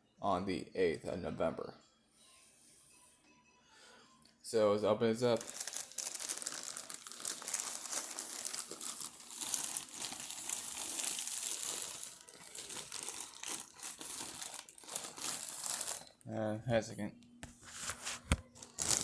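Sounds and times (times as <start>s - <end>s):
package crinkling and crumpling: 5.3s - 16.3s, 17.4s - 19.0s.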